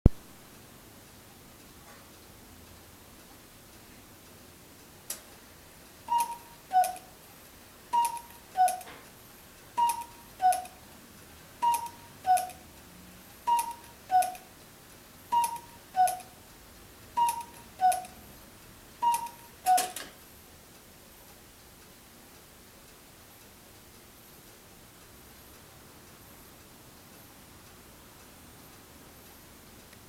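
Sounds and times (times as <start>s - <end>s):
cuckoo clock call: 6.0s - 7.2s, 7.9s - 9.0s, 9.8s - 10.8s, 11.6s - 12.7s, 13.4s - 14.5s, 15.3s - 16.4s, 17.1s - 18.3s, 19.0s - 20.1s.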